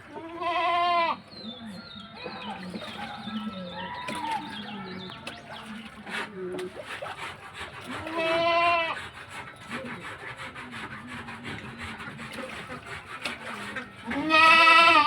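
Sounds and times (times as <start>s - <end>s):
farm animal bleating: 0.0s - 1.3s, 8.0s - 9.0s, 14.0s - 15.0s.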